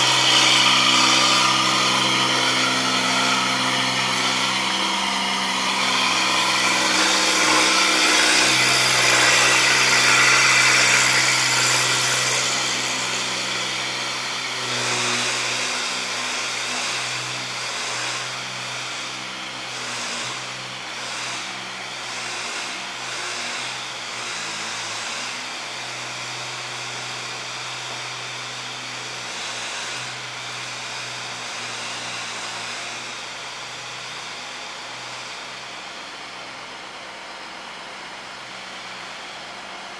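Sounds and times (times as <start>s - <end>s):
engine running steadily: 0.0s - 23.9s.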